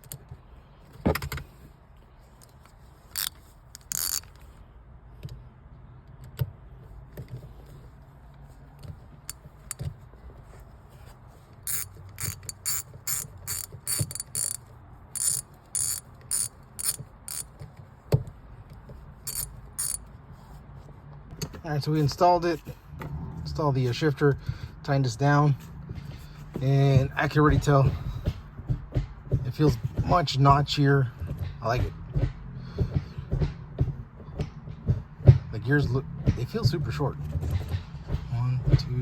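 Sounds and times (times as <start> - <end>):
ratchet wrench clicking: 2.4 - 4.4, 11.6 - 17.5, 19.3 - 20.0.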